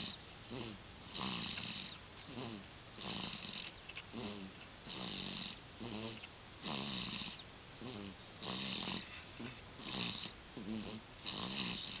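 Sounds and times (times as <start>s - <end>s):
person snoring: 4.2s - 12.0s.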